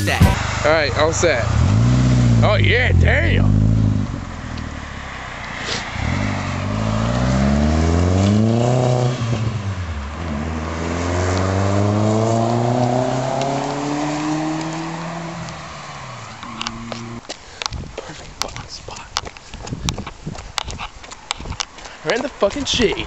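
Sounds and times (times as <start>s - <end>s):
car engine accelerating hard: 0.4s - 17.2s.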